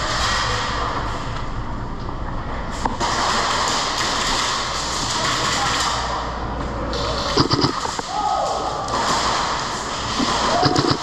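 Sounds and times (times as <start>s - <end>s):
quick sharp clicks: 7.4s - 8.0s.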